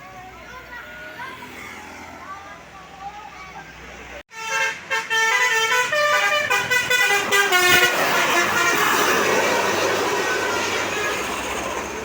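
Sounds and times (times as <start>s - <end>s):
multi-tone bus horn melody: 4.2s - 11.7s.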